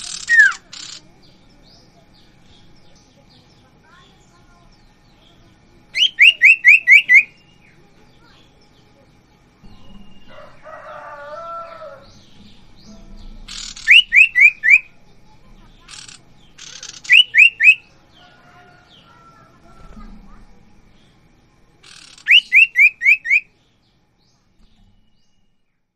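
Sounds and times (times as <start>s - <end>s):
bird whistled calls: 0.0s - 1.0s, 6.0s - 7.7s, 13.5s - 15.0s, 15.9s - 17.9s, 21.9s - 23.6s.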